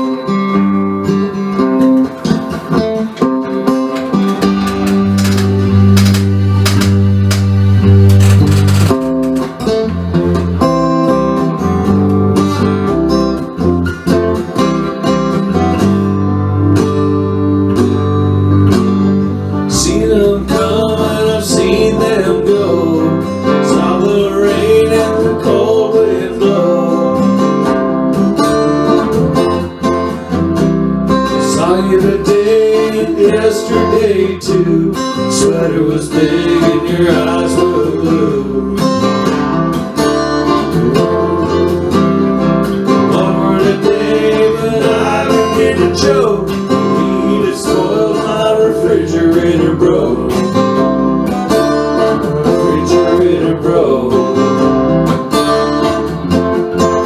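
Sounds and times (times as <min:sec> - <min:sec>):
bass line: 0:00.0 - 0:57.0
strummed acoustic guitar: 0:00.0 - 0:57.0
sharp percussive hits: 0:04.0 - 0:09.6.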